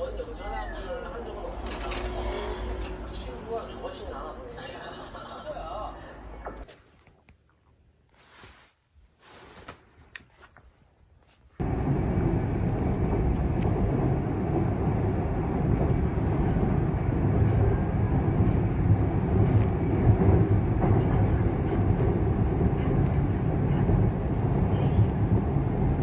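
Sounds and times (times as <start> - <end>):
vehicle rumbling in motion: 11.6 - 26.0.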